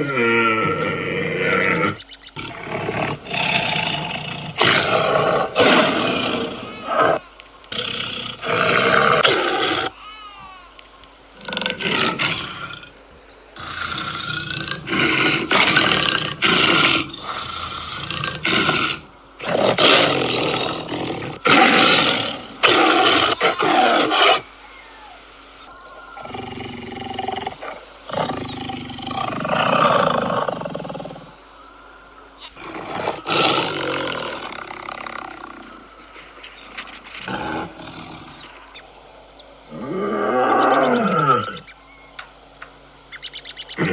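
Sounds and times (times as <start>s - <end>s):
tiger roaring: 0.0s - 10.0s, 11.4s - 13.0s, 13.6s - 25.1s, 26.2s - 31.3s, 32.6s - 36.0s, 37.1s - 38.6s, 39.7s - 41.7s
tiger soft calls: 13.6s - 42.2s.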